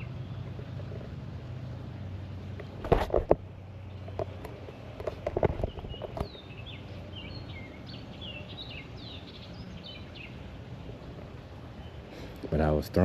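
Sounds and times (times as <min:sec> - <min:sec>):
sharp knocks and rustles: 0:02.5 - 0:06.4
songbird chirping and whistling: 0:05.6 - 0:10.4.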